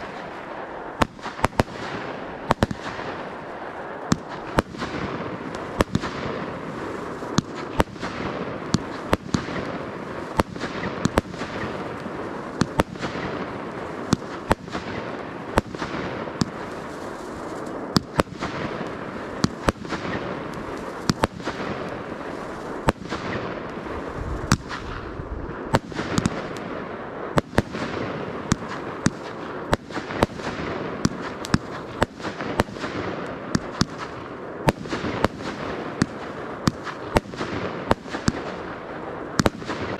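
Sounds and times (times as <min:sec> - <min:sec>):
fireworks bangs: 0:00.0 - 0:39.9
continuous rushing noise: 0:23.8 - 0:25.8.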